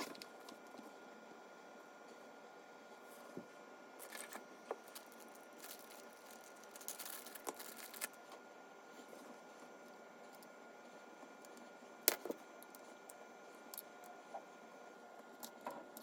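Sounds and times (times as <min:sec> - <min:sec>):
packaging rustling: 0:04.0 - 0:08.2.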